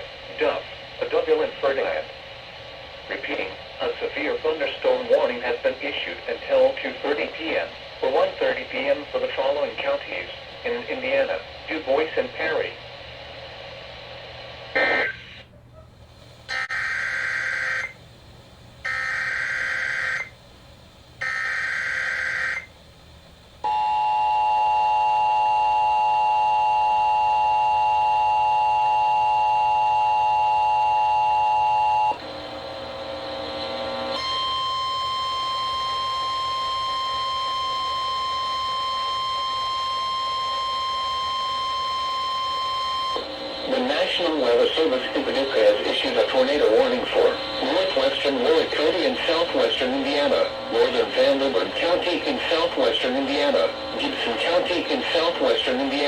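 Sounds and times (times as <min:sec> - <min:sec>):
steady alarm tone: 0:16.5 - 0:18.0, 0:18.8 - 0:20.4, 0:21.2 - 0:22.7, 0:23.6 - 0:56.0.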